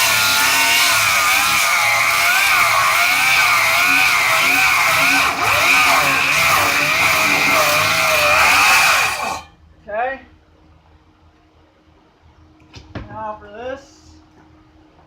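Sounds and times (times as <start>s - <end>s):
circular saw cutting rubber: 0.0s - 9.5s.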